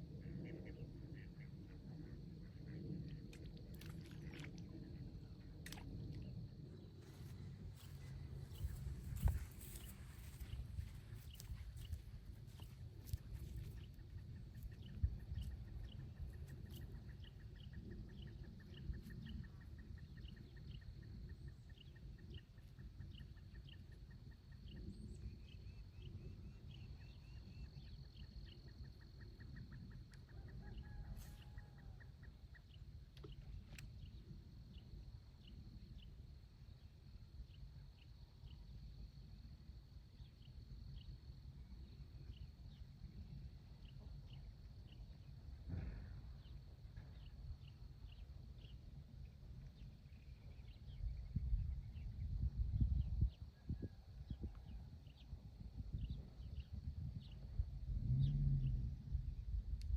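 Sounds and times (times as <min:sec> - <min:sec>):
low rumble: 0:56.0 - 0:59.9.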